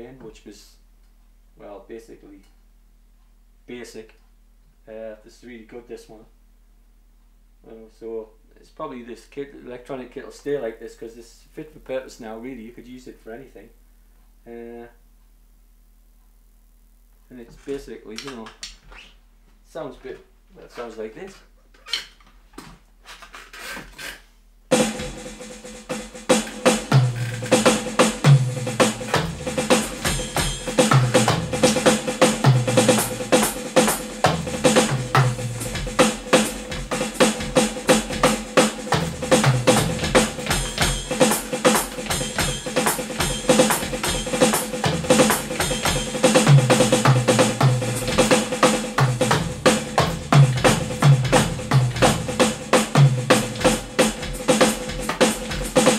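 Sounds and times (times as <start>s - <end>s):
electronic drum groove: 24.7s - 55.9s.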